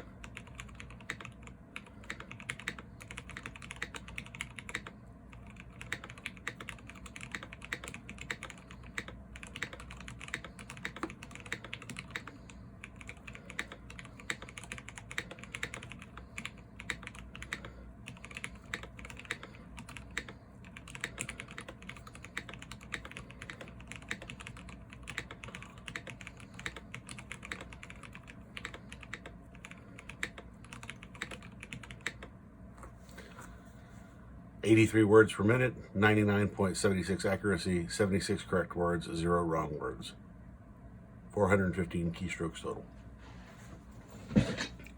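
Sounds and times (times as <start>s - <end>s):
mechanical keyboard typing: 0.0s - 32.3s.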